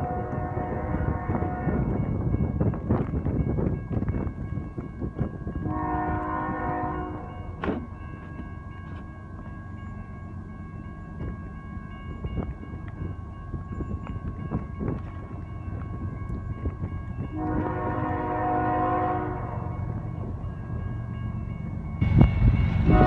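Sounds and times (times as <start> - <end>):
train horn blast: 0.0 - 2.0, 5.6 - 7.9, 17.3 - 19.9, 22.0 - 23.0
train rumble: 0.0 - 23.0.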